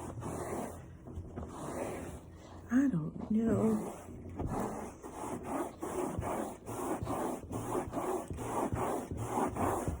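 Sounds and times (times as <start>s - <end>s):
cloth rubbing scratchy swish: 3.5s - 10.0s.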